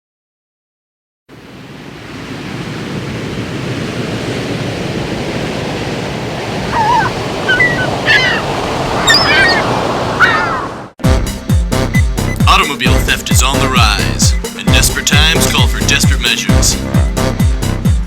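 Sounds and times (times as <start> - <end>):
ocean surf rushing: 1.3 - 11.0
short high calls: 9.0 - 10.7.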